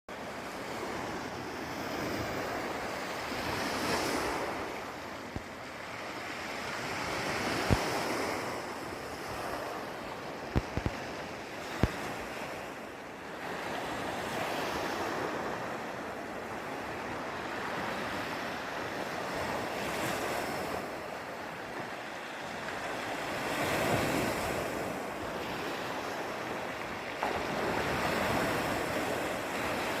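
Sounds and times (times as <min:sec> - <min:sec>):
wind on microphone: 0:00.4 - 0:12.9
sea surf washing onto shore: 0:00.4 - 0:17.0, 0:17.6 - 0:30.0.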